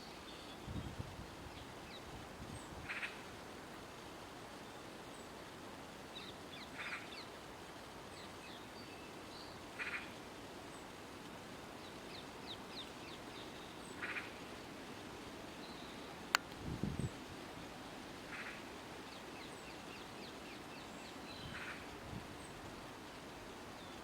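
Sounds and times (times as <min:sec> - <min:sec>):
bird rattling call: 0:14.0 - 0:14.4.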